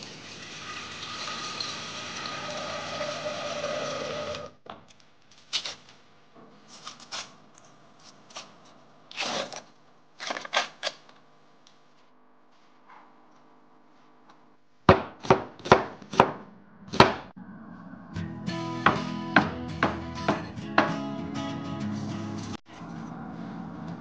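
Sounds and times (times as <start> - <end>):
utensils and cookware clattering: 0.0 - 4.4.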